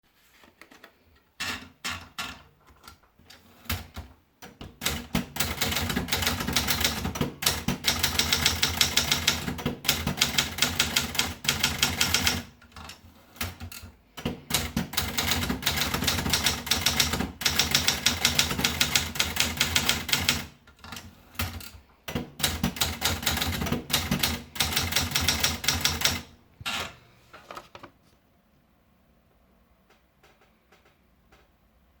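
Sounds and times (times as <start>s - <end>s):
typewriter keystrokes: 3.7s - 26.3s.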